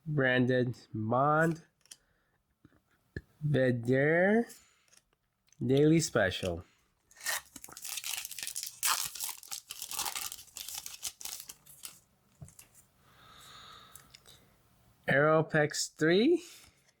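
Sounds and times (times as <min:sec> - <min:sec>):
foil pack tearing and crinkling: 0:07.1 - 0:12.0.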